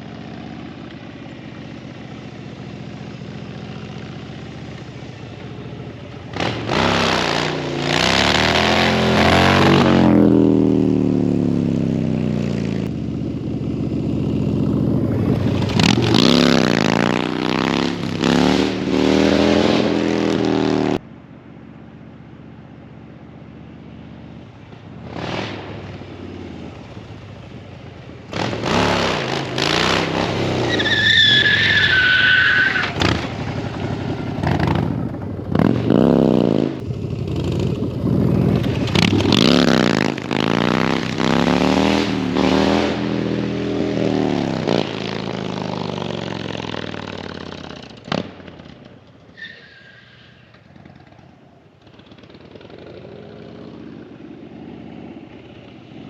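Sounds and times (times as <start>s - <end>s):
motorcycle engine revving: 0.0s - 21.0s, 24.2s - 49.3s, 50.5s - 56.0s
tire squealing: 28.3s - 36.8s, 48.9s - 53.0s.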